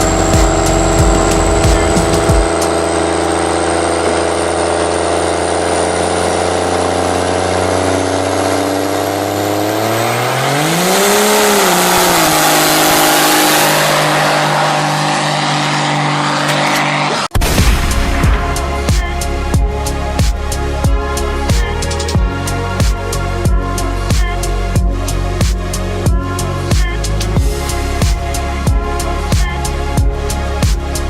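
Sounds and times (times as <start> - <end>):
synthesizer held chord: 0.0 - 8.1, 17.4 - 26.7
rising high synth sweep: 0.0 - 24.0.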